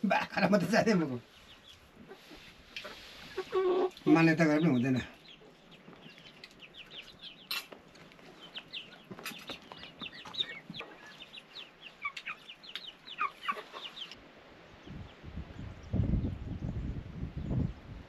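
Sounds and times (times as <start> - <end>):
chicks peeping: 0.3 - 14.2.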